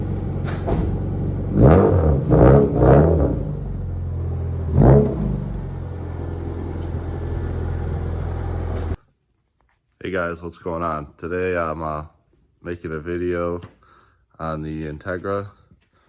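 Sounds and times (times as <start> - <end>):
car engine idling and revving: 0.0 - 9.0.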